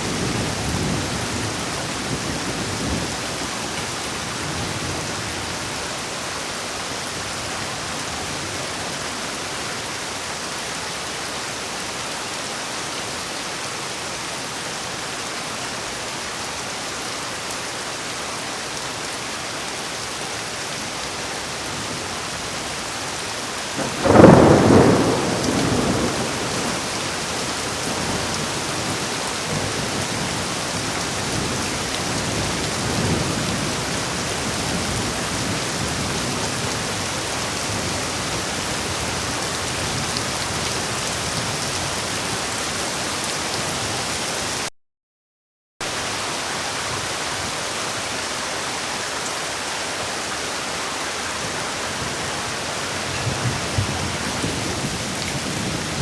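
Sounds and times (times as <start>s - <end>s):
heavy rain falling: 0.0s - 44.7s, 45.8s - 56.0s
thunderclap rumbling: 23.8s - 33.9s.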